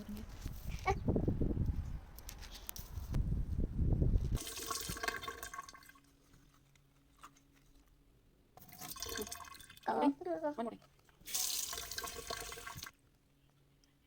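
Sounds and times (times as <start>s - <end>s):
water running and splashing: 11.2s - 12.9s.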